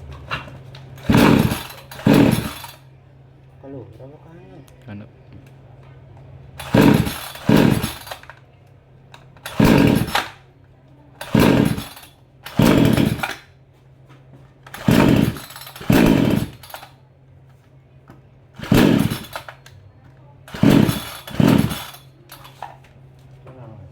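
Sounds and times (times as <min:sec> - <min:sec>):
chainsaw starter cord pulls: 0:00.2 - 0:02.8, 0:06.6 - 0:08.4, 0:09.4 - 0:10.4, 0:11.2 - 0:13.5, 0:14.7 - 0:17.0, 0:18.6 - 0:19.8, 0:20.5 - 0:22.8
engine turning over briefly: 0:01.0 - 0:02.8, 0:06.6 - 0:08.3, 0:09.4 - 0:10.4, 0:11.2 - 0:13.4, 0:14.7 - 0:16.9, 0:18.6 - 0:19.6, 0:20.5 - 0:22.6.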